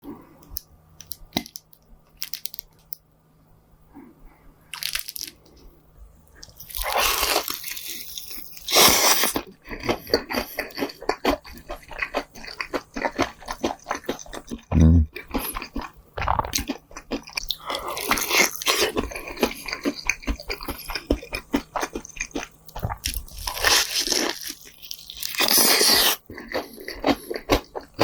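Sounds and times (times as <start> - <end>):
crackling chewing: 6.4 - 28.0
crunching bites into fried chicken: 6.5 - 15.9, 16.5 - 28.0.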